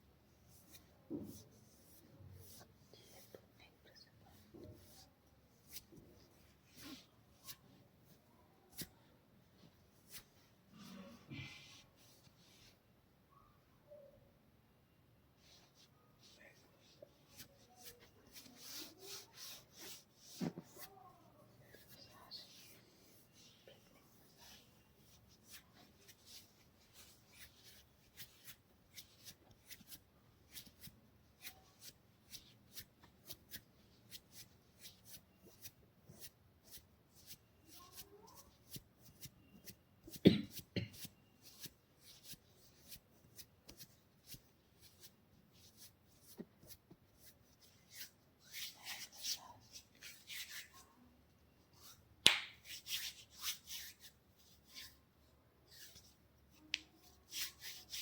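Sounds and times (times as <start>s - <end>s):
hand slapping body: 52.2s - 52.7s
massage hands clicking: 52.2s - 52.7s.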